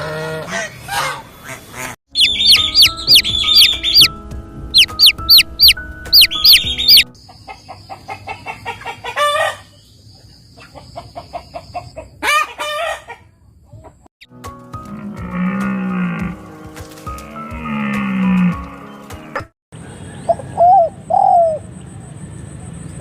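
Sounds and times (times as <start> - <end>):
chickens clucking: 1.8 - 4.1, 4.8 - 14.0
cow mooing: 14.9 - 16.4, 17.3 - 18.8.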